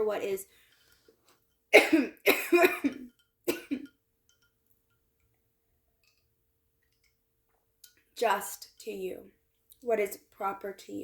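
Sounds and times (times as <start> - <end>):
woman coughing: 1.8 - 3.9.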